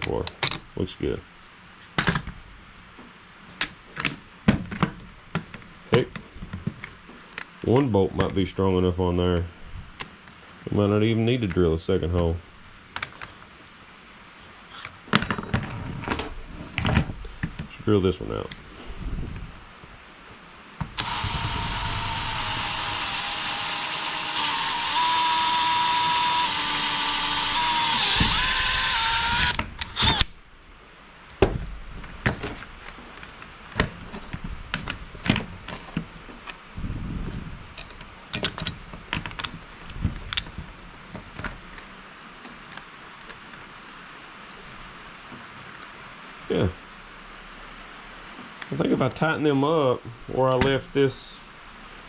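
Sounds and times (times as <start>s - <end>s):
power drill whining: 21.0s - 30.3s.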